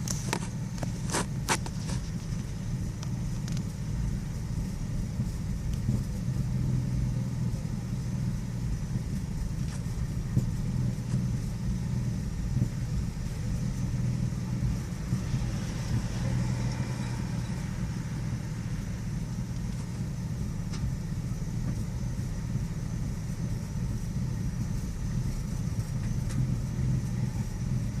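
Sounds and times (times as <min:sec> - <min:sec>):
car engine idling roughly: 0:00.0 - 0:28.0.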